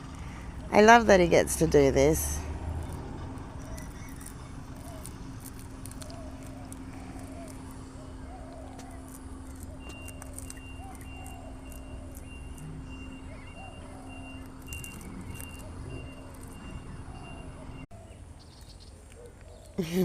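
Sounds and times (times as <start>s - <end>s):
low engine hum: 0.0s - 20.0s
reversing alarm beeping: 8.8s - 17.9s.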